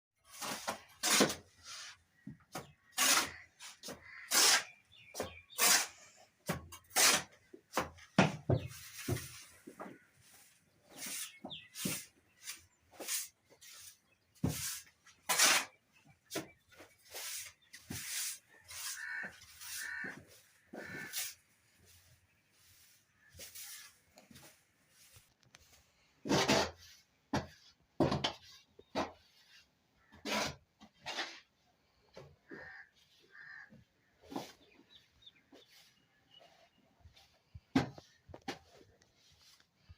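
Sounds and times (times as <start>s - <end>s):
trowel scraping mortar: 0.2s - 9.3s, 10.3s - 25.5s, 26.2s - 31.6s.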